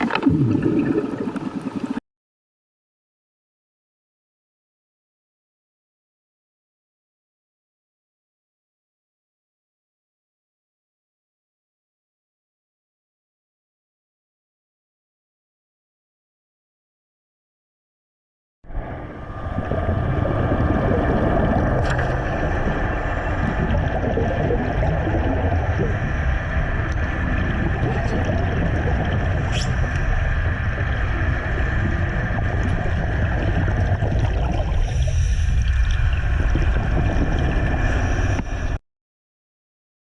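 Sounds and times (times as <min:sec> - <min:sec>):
constant hum: 0:18.7 - 0:38.8
low underwater rumble: 0:18.7 - 0:38.8.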